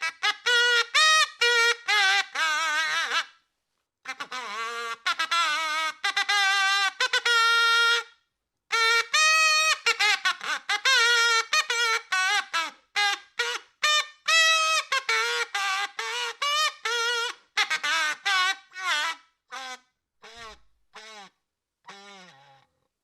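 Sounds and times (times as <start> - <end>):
comic trumpet-like toots: 4.1 - 8.1, 8.7 - 22.7.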